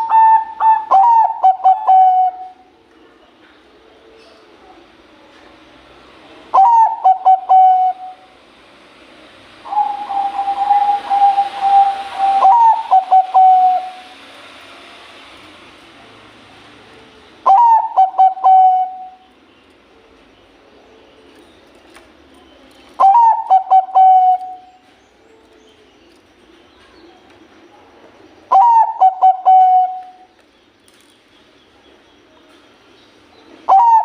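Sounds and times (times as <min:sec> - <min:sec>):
dove cooing: 0:00.0 - 0:02.6, 0:06.5 - 0:08.2, 0:09.7 - 0:14.0, 0:17.4 - 0:19.2, 0:23.0 - 0:24.7, 0:28.5 - 0:30.3, 0:33.7 - 0:34.0.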